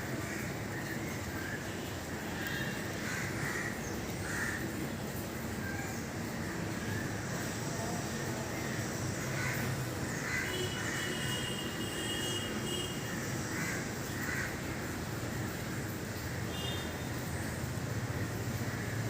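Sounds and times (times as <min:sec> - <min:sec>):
crows cawing: 0:00.2 - 0:01.6, 0:02.4 - 0:04.9, 0:08.6 - 0:15.4, 0:18.2 - 0:19.0.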